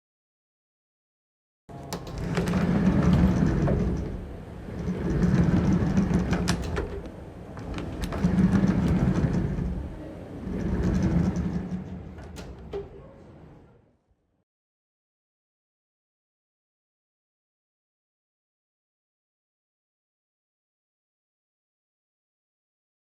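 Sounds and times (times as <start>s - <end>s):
sliding door rolling on rail: 1.7s - 13.8s.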